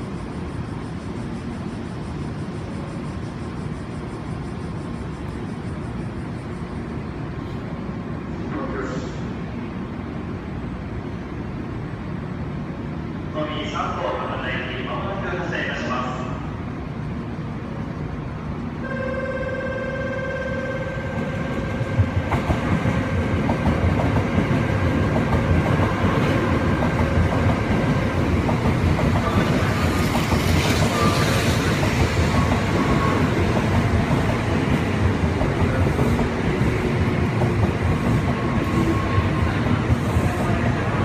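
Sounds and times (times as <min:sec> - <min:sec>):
train rumble and wheel clatter: 0:00.0 - 0:41.0
train wheel squeal: 0:29.2 - 0:33.6, 0:38.0 - 0:41.0.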